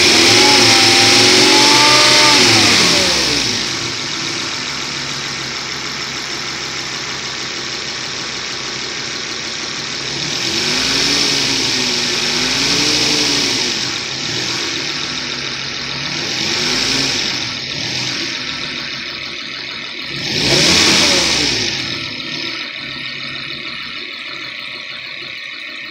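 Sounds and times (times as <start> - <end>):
car road noise: 0.0 - 24.9
car engine revving: 0.0 - 25.9.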